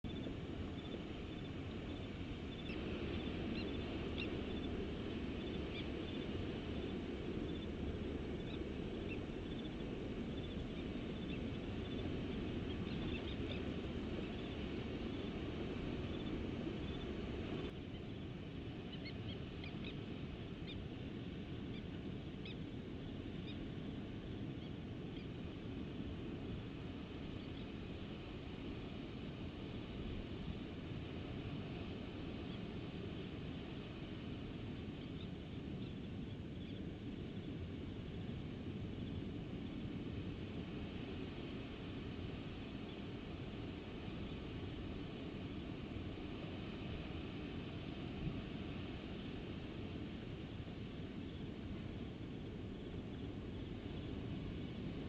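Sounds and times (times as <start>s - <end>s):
steady background hiss: 0.1s - 55.0s.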